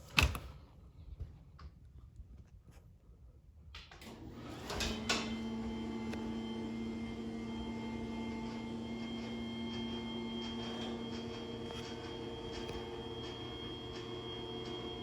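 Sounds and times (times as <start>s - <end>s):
garage door opener click: 3.9s - 15.0s
motor humming: 4.0s - 15.0s.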